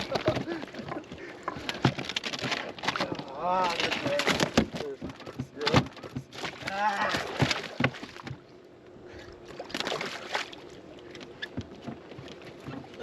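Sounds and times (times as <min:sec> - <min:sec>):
knocks and thumps of gear: 0:00.0 - 0:06.6
faint steady hum: 0:00.0 - 0:13.0.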